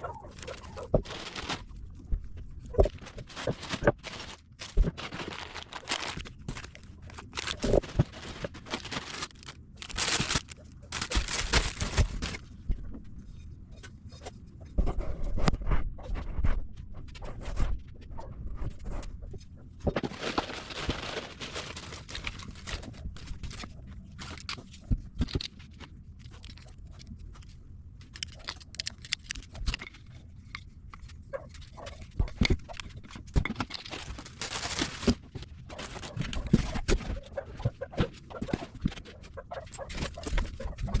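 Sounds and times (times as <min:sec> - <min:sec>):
packaging rustling and crinkling: 0:00.0 - 0:12.6, 0:19.9 - 0:27.5, 0:31.5 - 0:41.0.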